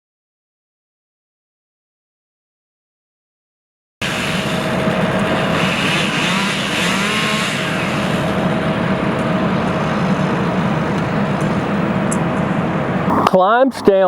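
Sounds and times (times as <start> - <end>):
heavy machinery engines droning: 4.0 - 14.0.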